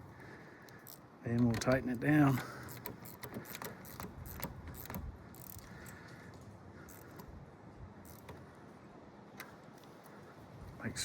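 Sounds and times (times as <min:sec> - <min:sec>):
wrench clicking on metal: 0:00.7 - 0:06.0, 0:08.0 - 0:08.4.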